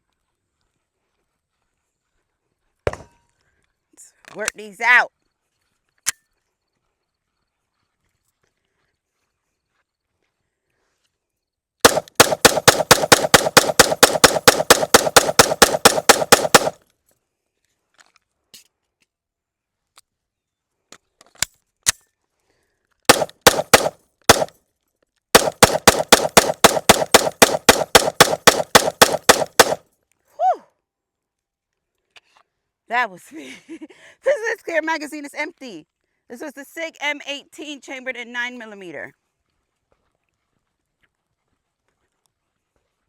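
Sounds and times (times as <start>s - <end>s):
pistol shots rapid fire: 11.8s - 16.8s, 23.1s - 24.5s, 25.4s - 29.8s.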